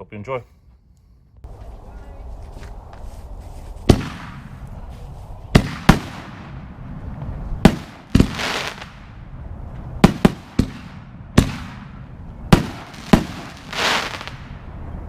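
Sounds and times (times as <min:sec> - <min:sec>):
hissing crackle: 0:12.6 - 0:14.6.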